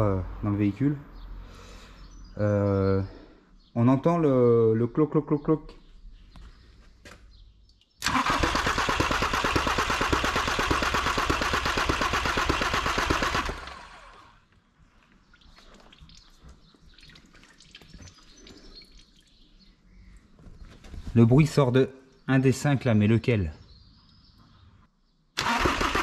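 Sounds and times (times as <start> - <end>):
engine clacking noise: 8.0 - 14.3
starter motor cranking engine: 8.0 - 14.4, 25.4 - 26.0.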